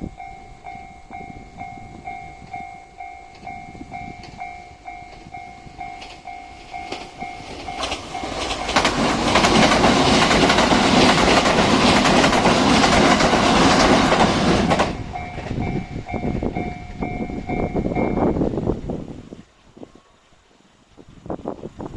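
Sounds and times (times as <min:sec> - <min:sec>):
level-crossing bell ringing: 0:00.0 - 0:08.9, 0:14.9 - 0:18.4
train wheels clattering on rails: 0:00.0 - 0:18.4.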